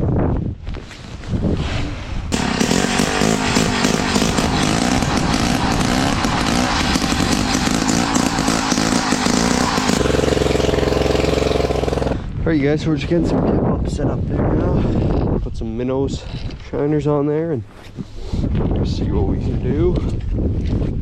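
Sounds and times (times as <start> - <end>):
ice auger engine revving: 2.3 - 12.2.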